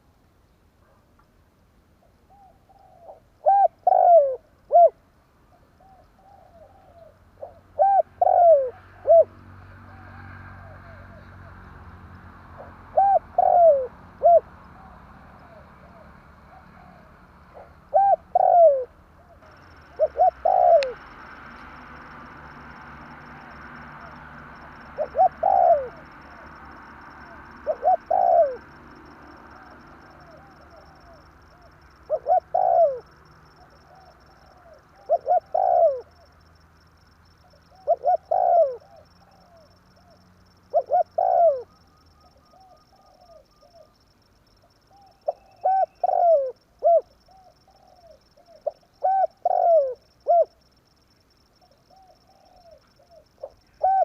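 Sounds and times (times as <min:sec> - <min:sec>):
dove cooing: 0:02.3 - 0:11.7, 0:12.6 - 0:36.6, 0:37.4 - 0:50.7, 0:51.5 - 0:54.0.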